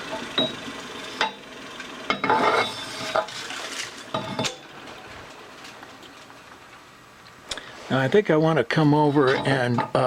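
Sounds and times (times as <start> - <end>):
metal tools clinking on metal: 9.2 - 10.0.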